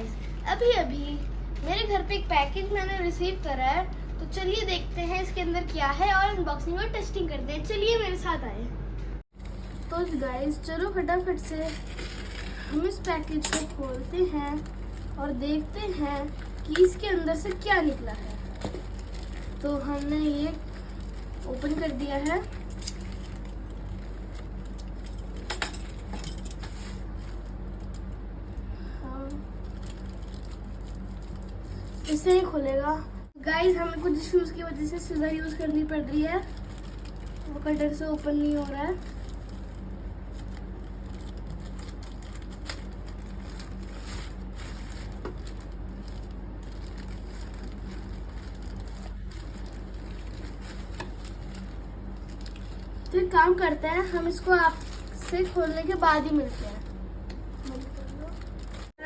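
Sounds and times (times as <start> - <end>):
low electrical hum: 0.0 - 59.0
wrapping rustling: 9.3 - 28.2, 29.5 - 32.7, 33.4 - 59.0
package being handled: 11.4 - 28.1, 36.4 - 53.2.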